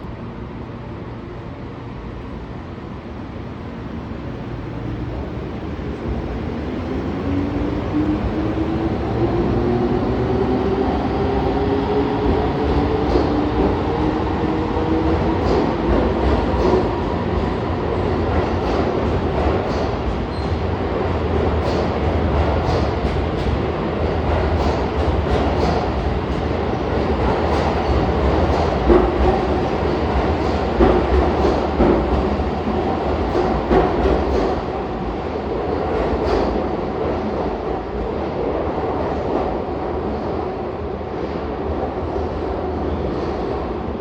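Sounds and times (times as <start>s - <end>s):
rail rumble: 0.0s - 44.0s.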